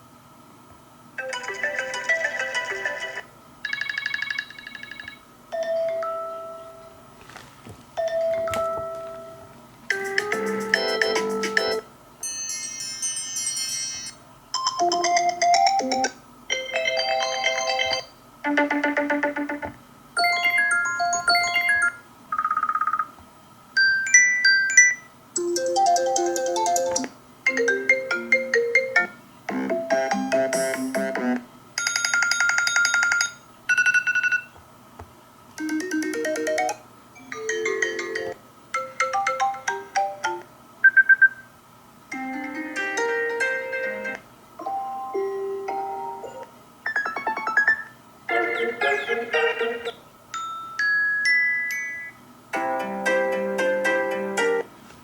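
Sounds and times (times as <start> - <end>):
phone ringtone snippets: 1.2 - 6.9, 8.0 - 18.0, 20.2 - 23.1, 31.8 - 34.5.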